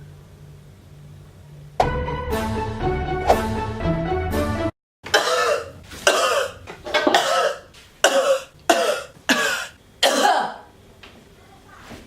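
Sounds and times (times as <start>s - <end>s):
person coughing: 5.1s - 10.7s.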